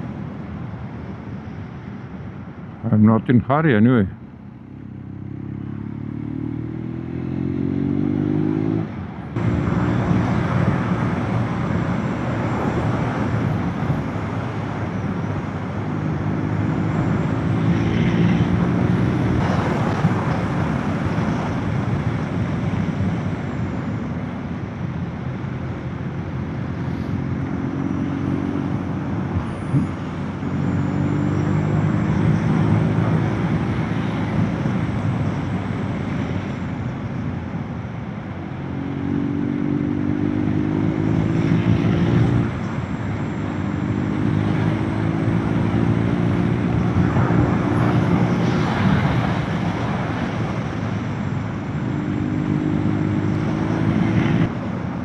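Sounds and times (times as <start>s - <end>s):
wind and road noise: 0.0s - 55.0s
motorcycle engine revving: 4.8s - 11.6s, 38.6s - 42.6s, 43.3s - 50.1s, 51.7s - 54.5s.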